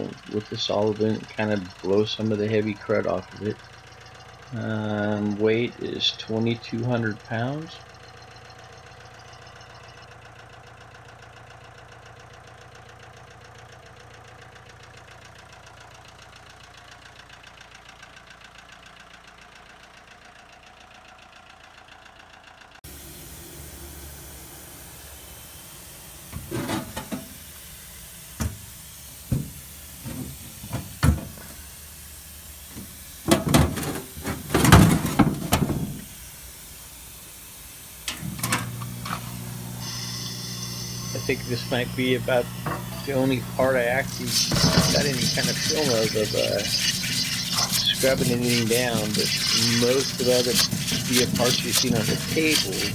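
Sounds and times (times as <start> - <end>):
hissing spray: 22.9 - 52.9.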